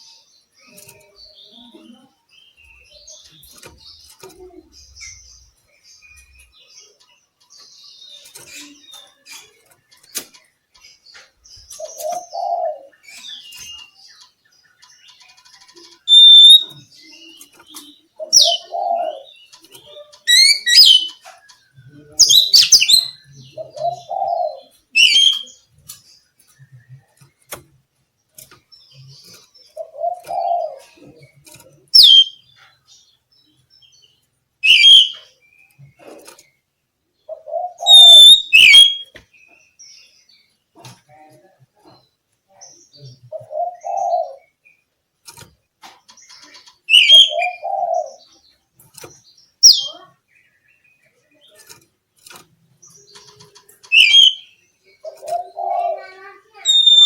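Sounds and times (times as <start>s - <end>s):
bird singing whistled notes: 16.1s - 16.8s, 25.0s - 25.6s, 32.0s - 32.5s, 34.6s - 35.3s, 37.8s - 39.2s, 46.9s - 47.7s, 49.6s - 50.0s, 53.9s - 54.6s, 56.7s - 57.0s
low bird call: 37.4s - 39.2s, 46.9s - 48.1s, 53.9s - 54.6s, 56.7s - 57.0s.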